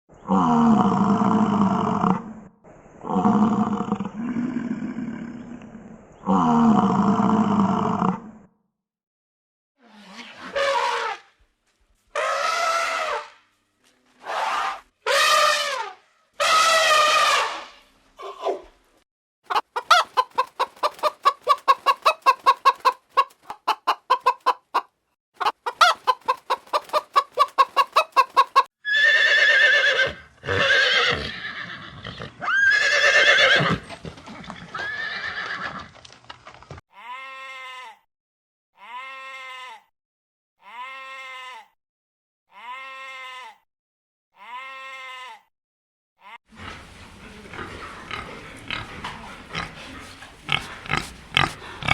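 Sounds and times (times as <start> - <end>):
farm animal calls: 12.2 - 13.4, 14.2 - 18.5, 25.4 - 35.7, 46.2 - 51.9.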